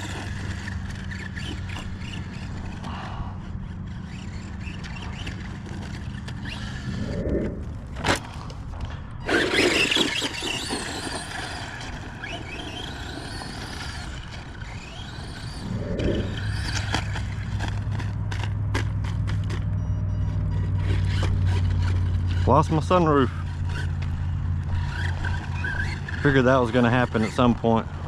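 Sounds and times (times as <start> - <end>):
electric motor whining: 0.0 - 28.0
tyres spinning and scraping on dirt: 0.0 - 28.0.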